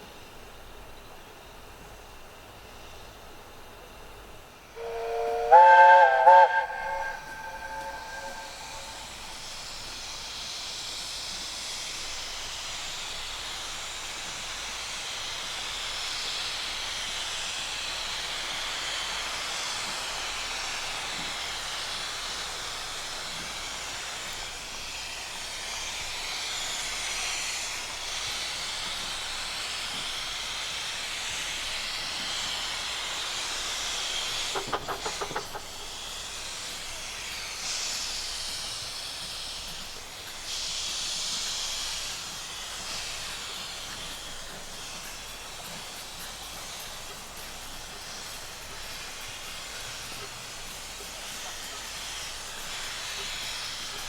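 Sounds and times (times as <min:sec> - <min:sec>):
steam hissing: 0:00.0 - 0:54.0
steam locomotive whistle: 0:04.7 - 0:10.0.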